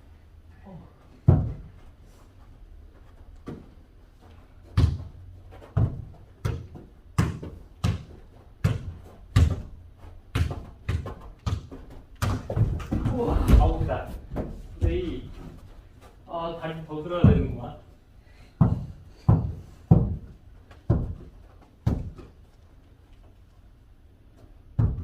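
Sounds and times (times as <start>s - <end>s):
ball kicked and bouncing: 1.2s - 1.8s, 3.4s - 15.6s, 18.6s - 22.4s, 24.4s - 25.0s.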